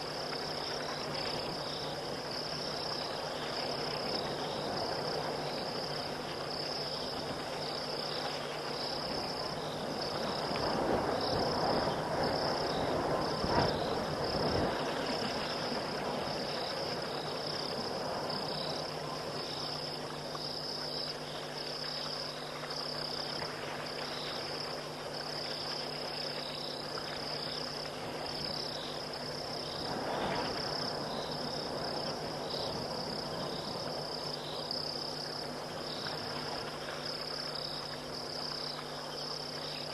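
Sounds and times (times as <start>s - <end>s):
insects pulsing high trill: 0.0s - 39.9s.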